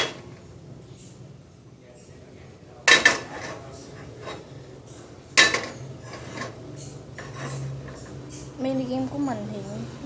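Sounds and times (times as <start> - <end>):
metal utensil clanking on pan: 2.8 - 4.5, 5.4 - 8.1
utensil scraping a pan: 3.0 - 4.6, 5.4 - 8.2.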